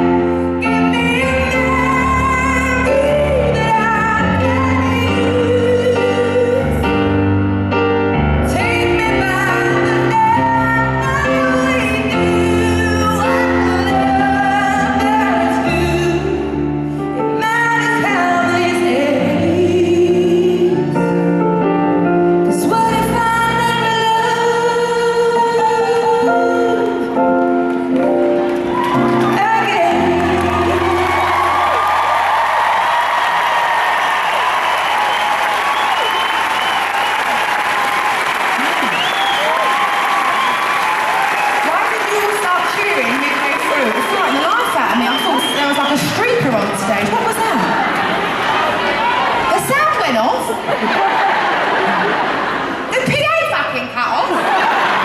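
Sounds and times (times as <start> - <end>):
woman singing: 0.0 - 7.0, 8.4 - 21.1, 22.5 - 27.2, 29.2 - 31.6.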